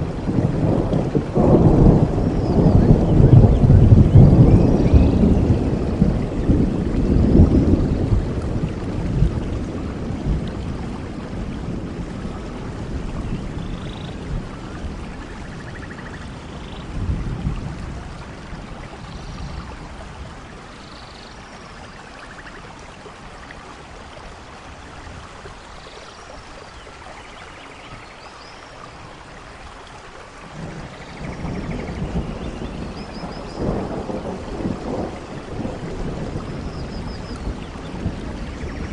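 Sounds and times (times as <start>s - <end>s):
rolling thunder: 0.0s - 20.7s, 30.4s - 38.9s
rain falling steadily: 0.0s - 38.9s.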